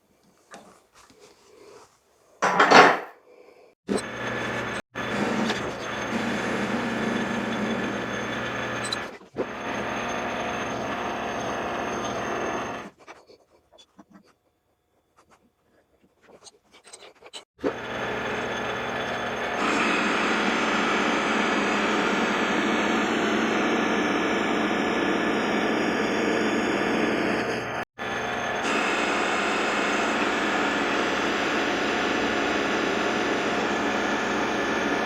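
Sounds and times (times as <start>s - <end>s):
machine tool cutting metal: 3.9s - 12.9s.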